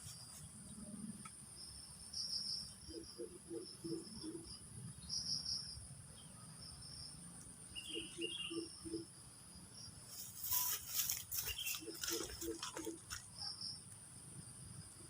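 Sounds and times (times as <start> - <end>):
crickets and insects trilling: 0.0 - 15.0.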